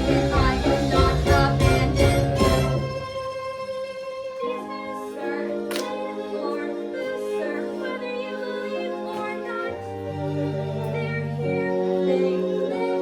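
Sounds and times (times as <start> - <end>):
low bass line: 0.0 - 3.0
sustained accompaniment chords: 0.0 - 8.5.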